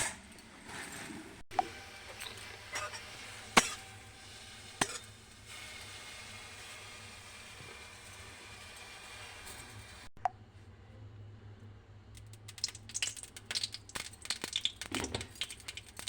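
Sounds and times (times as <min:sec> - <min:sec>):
kitchen utensils clinking: 0:00.0 - 0:05.3.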